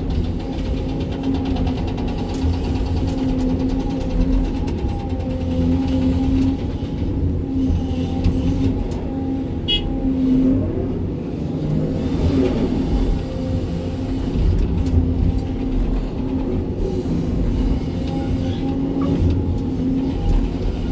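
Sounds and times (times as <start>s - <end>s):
excavator diesel engine working: 0.0s - 20.9s.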